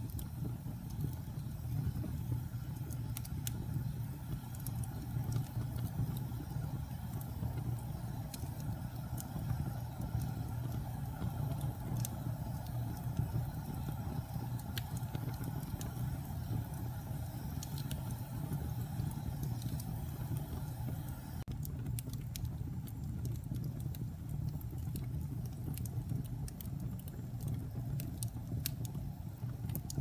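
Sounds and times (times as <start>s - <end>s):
fire crackling and popping: 0.0s - 30.0s
fire rumbling: 0.0s - 30.0s.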